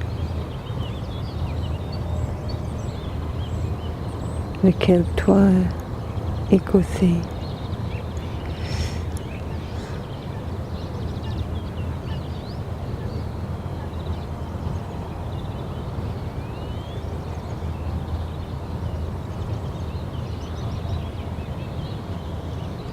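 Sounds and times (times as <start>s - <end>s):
small birds chirping: 0.0s - 15.8s
low outdoor rumble: 0.0s - 22.9s.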